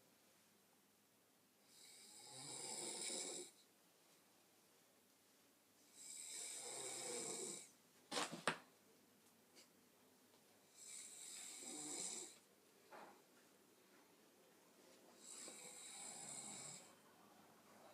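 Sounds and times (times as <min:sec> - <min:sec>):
woman snoring: 0:01.7 - 0:03.6, 0:06.0 - 0:07.7, 0:10.7 - 0:12.4, 0:15.2 - 0:16.9.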